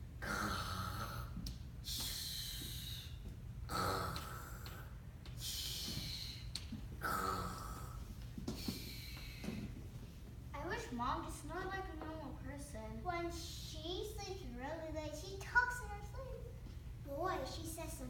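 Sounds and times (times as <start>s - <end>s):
person snoring: 0.2s - 1.3s, 3.7s - 4.7s, 7.0s - 8.0s.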